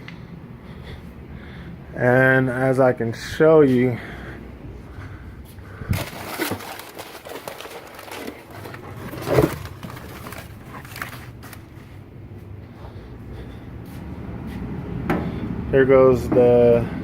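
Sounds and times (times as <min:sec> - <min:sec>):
faint rustling: 0:04.9 - 0:12.0
handling clicks and knocks: 0:06.0 - 0:11.6.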